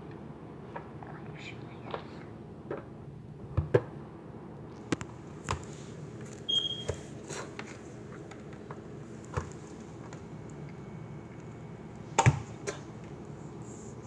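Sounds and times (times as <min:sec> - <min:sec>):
high squeak: 0:06.5 - 0:06.9.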